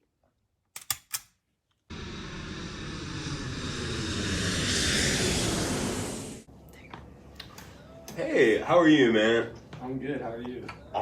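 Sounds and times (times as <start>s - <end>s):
jet airliner engine rush: 1.9s - 6.5s.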